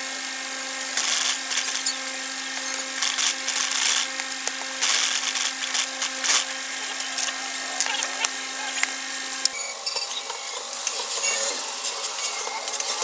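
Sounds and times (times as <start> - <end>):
sewing machine stitching: 0.9 - 8.8.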